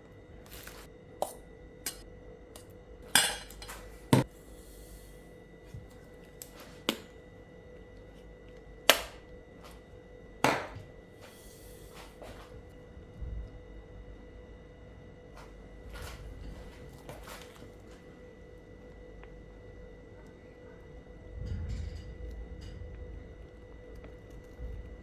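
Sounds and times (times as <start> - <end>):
utensils and dishes clinking: 0.6 - 2.0, 2.6 - 4.3.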